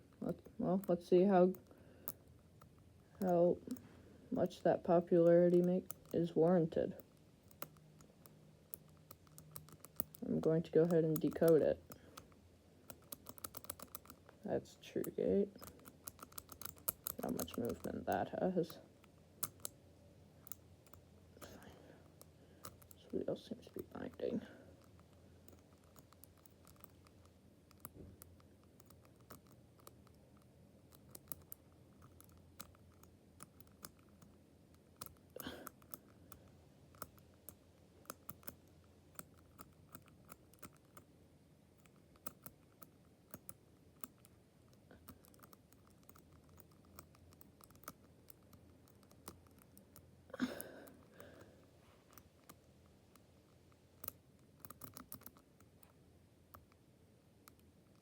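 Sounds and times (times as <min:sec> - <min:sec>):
combination lock wheels clicking: 0:12.9 - 0:14.3, 0:15.5 - 0:18.2.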